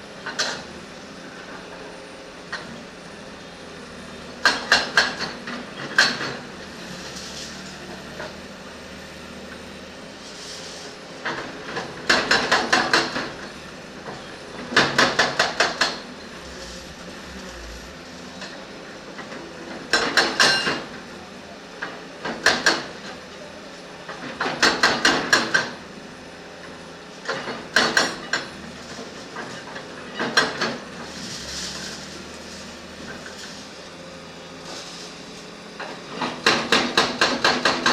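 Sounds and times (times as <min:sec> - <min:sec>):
low engine sound: 0:00.0 - 0:20.0.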